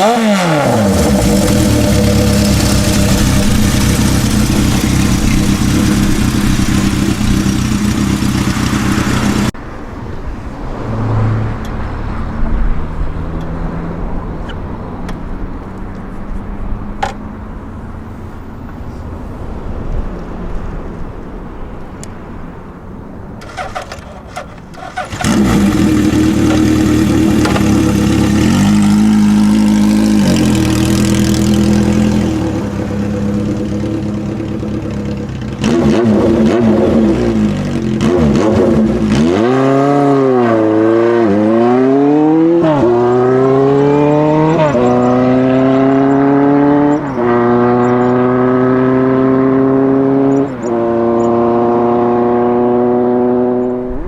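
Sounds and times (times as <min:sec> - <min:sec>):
motorcycle engine accelerating: 0:00.0 - 0:09.6, 0:23.4 - 0:54.0.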